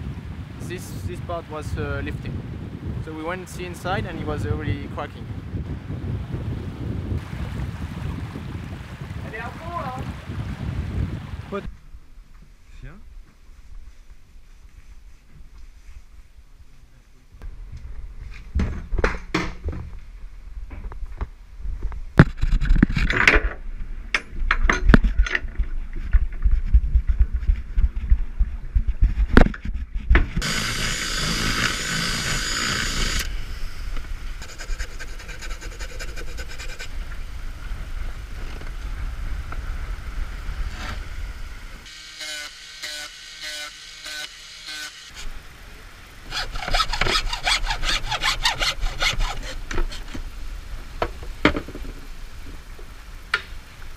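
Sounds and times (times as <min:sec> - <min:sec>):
sawing or rasping strokes: 0:30.4 - 0:37.0, 0:41.8 - 0:45.3, 0:46.3 - 0:50.2.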